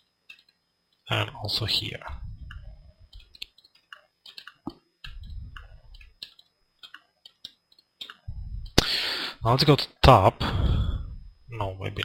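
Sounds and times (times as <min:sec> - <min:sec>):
computer mouse clicking: 0:00.3 - 0:00.6, 0:02.5 - 0:08.3
low rumble: 0:02.0 - 0:03.2, 0:05.1 - 0:06.0, 0:08.3 - 0:08.8.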